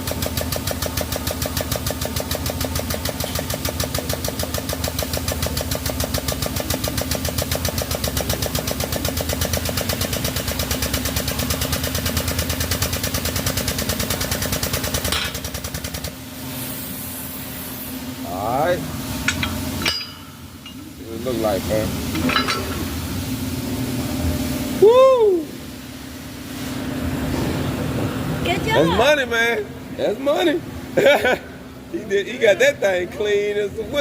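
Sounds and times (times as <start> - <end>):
hydraulic hiss: 12.8 - 20.0.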